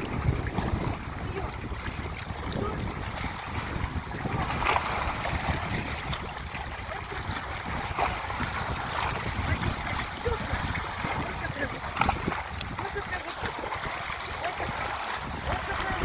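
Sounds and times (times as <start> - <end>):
sea waves washing: 0.0 - 16.0
wind rumbling on microphone: 0.0 - 16.0.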